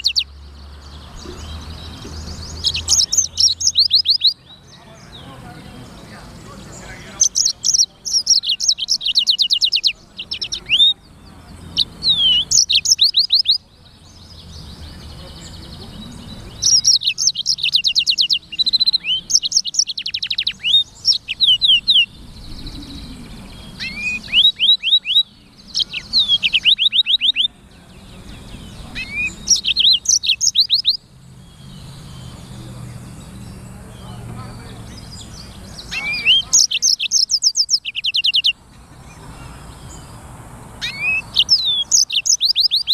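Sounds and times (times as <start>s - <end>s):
canary singing: 0.0s - 42.9s.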